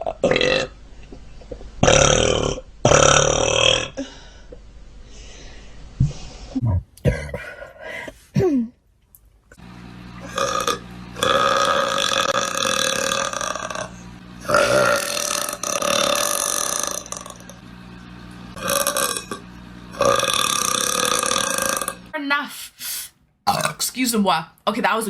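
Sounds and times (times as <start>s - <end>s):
women burping: 10.2s - 17.5s, 23.5s - 23.8s.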